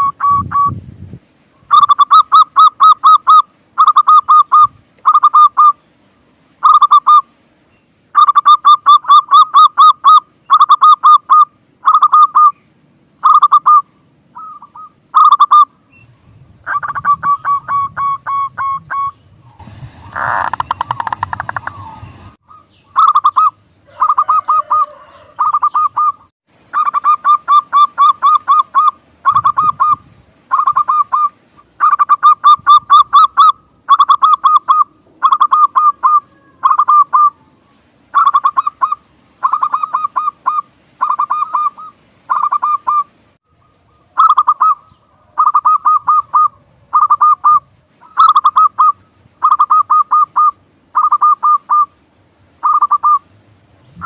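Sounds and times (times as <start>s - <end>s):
dove cooing: 1.6s - 5.8s, 8.2s - 12.6s, 16.6s - 19.2s, 20.0s - 43.1s, 43.7s - 52.0s, 52.6s - 53.3s.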